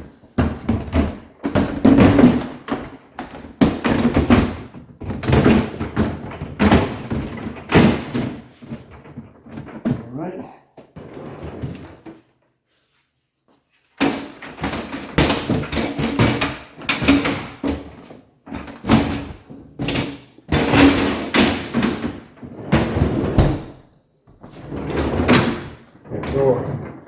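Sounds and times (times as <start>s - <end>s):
freezer drawer rolling on rails: 11.0s - 12.1s, 20.6s - 23.8s, 24.5s - 27.0s.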